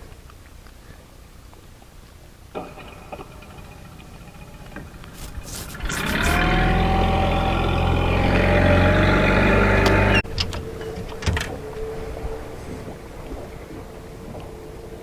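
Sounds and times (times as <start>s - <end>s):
outboard motor throttling up: 2.5s - 13.6s.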